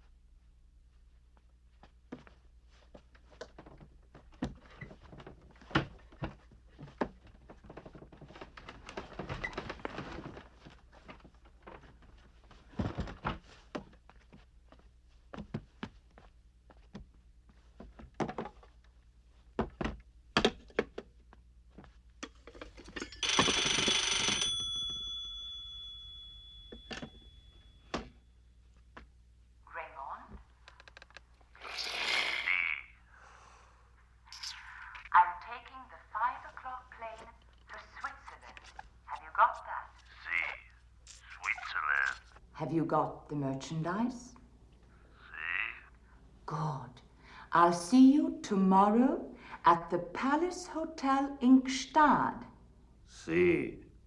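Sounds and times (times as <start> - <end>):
telephone bell ringing: 22.9 - 28.2
handling clicks and knocks: 26.6 - 28.2.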